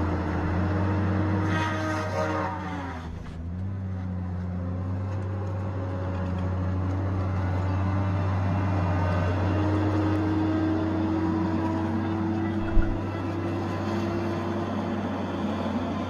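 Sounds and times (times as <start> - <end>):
diesel engine running: 0.0 - 16.0
high whine falling in pitch: 12.6 - 13.1.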